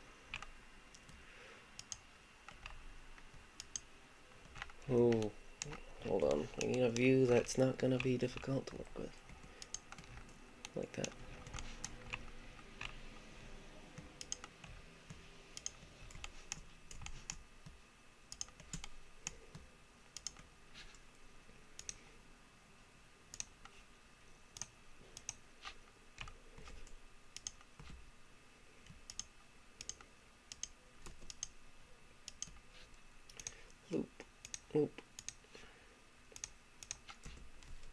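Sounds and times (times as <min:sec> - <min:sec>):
low room hum: 0:00.0 - 0:37.9
computer mouse clicks: 0:00.3 - 0:01.2, 0:01.8 - 0:13.3, 0:13.9 - 0:21.0, 0:21.8 - 0:22.0, 0:23.3 - 0:23.8, 0:24.5 - 0:25.4, 0:26.2 - 0:28.0, 0:28.8 - 0:31.6, 0:32.2 - 0:32.7, 0:33.3 - 0:33.8, 0:34.4 - 0:35.4, 0:36.3 - 0:37.9.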